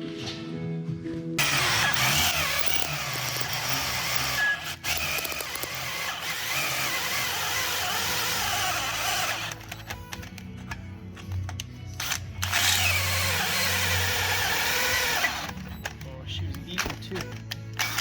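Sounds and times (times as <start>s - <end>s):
power tool cutting steel: 1.4s - 10.1s, 12.4s - 15.6s.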